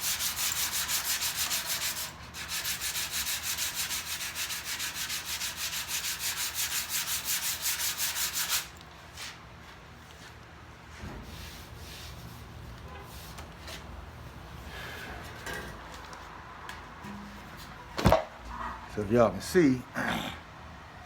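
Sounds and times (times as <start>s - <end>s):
sandpaper sanding filler: 0.0s - 8.7s.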